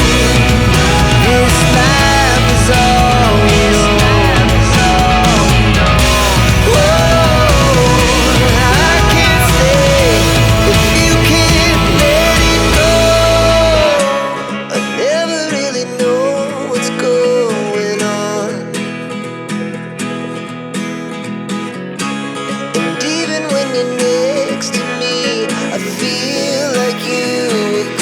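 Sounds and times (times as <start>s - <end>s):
heavy bass: 0.0s - 14.3s
melodic vocal line: 0.0s - 19.1s, 22.6s - 28.0s
plucked acoustic guitar: 0.0s - 28.0s.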